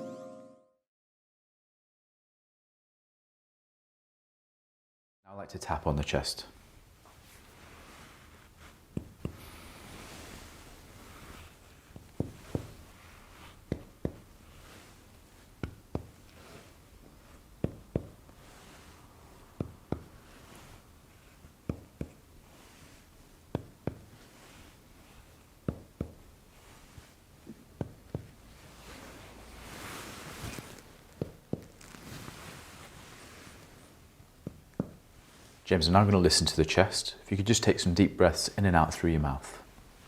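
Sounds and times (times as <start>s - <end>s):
fingers tapping on chest: 8.9s - 9.4s, 11.9s - 12.8s, 13.7s - 14.3s, 15.6s - 16.2s, 17.6s - 18.3s, 19.6s - 20.2s, 21.6s - 22.2s, 23.5s - 24.1s, 25.6s - 26.2s, 27.4s - 28.4s, 31.1s - 31.9s, 34.4s - 35.0s.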